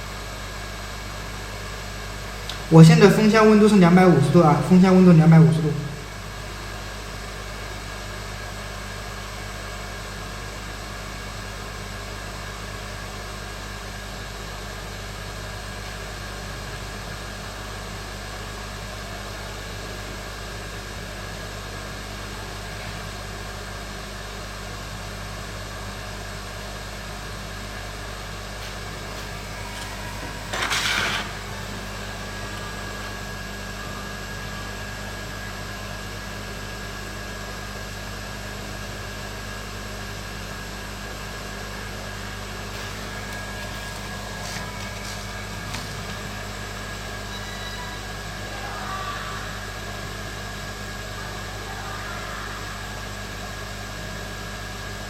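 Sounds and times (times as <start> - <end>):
faint hum: 0.0 - 55.0
hot air station blowing: 41.8 - 48.5.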